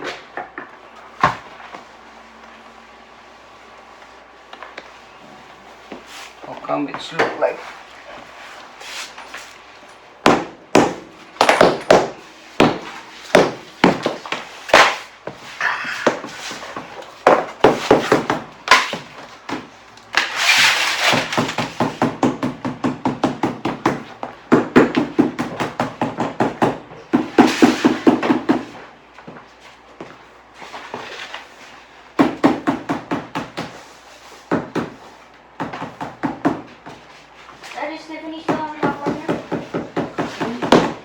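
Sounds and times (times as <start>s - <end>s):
hammer-like tapping on floor tiles: 10.2s - 14.9s.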